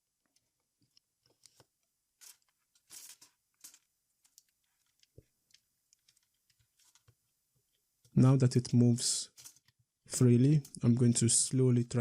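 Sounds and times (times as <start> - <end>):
plastic pieces scraping: 2.2 - 5.1.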